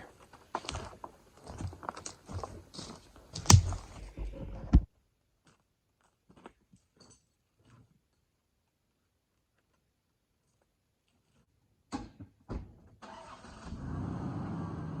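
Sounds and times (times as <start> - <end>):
crunching and rustling: 0.2 - 4.7
sharp knocks: 3.5 - 4.9.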